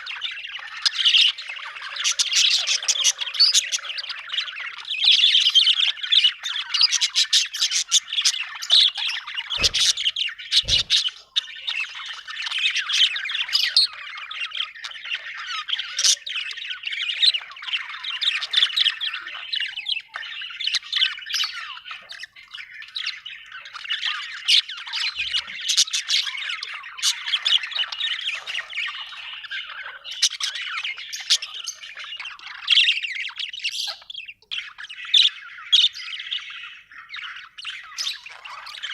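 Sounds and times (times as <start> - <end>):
budgerigar chirping and chattering: 0.0 - 38.9
dull thumps: 9.6 - 11.1.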